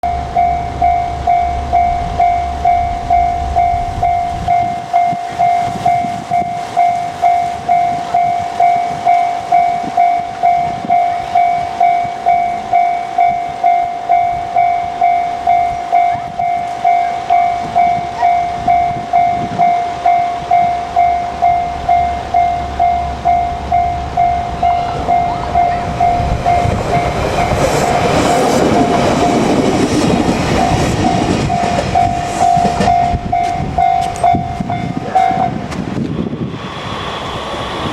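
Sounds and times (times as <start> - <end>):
level crossing bell ringing: 0.0 - 27.6
electric train running: 0.0 - 37.9.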